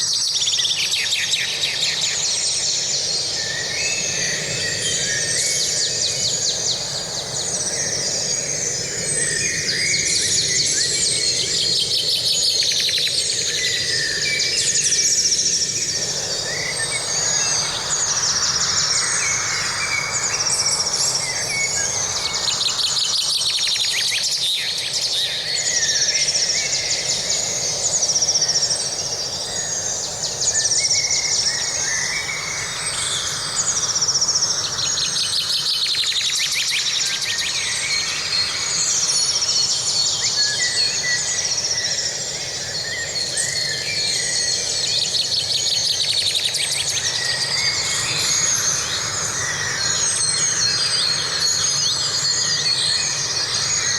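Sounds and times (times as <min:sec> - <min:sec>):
birds singing and calling: 0:28.6 - 0:53.9.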